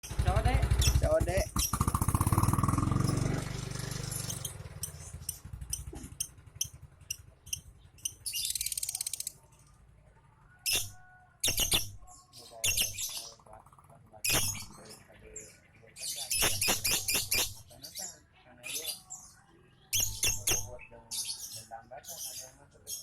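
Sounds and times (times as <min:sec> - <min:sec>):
lovebird chirping and chattering: 0:00.0 - 0:03.2, 0:03.9 - 0:09.7, 0:10.6 - 0:23.0.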